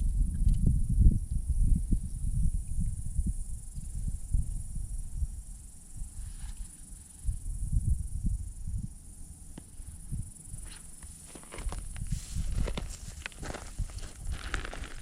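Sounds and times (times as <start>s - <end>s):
insects droning high-pitched: 0.0s - 15.0s
low rumbling bumps: 7.6s - 15.0s.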